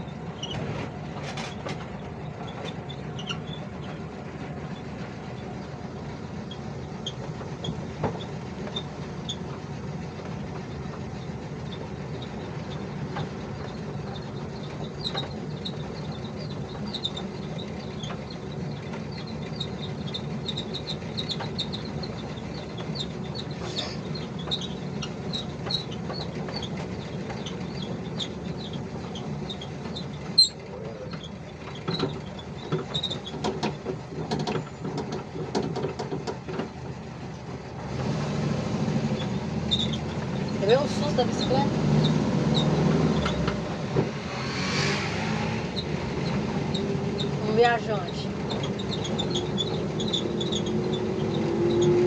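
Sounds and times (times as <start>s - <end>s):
van engine and road noise: 0.0s - 52.0s
high chirping squeak: 13.6s - 33.4s, 39.2s - 43.5s, 45.7s - 52.0s.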